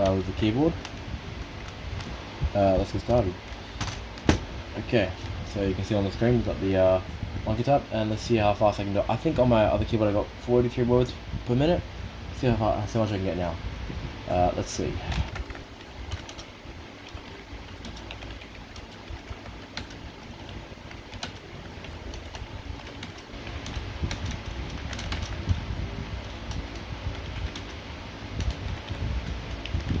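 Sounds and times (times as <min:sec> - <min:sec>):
fast keyboard typing: 0:15.0 - 0:30.0.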